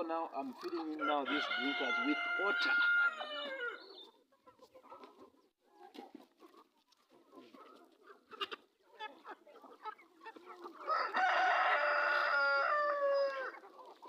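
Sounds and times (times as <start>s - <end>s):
chickens clucking: 0.0s - 14.0s
rooster crowing: 1.0s - 3.8s, 10.8s - 13.6s.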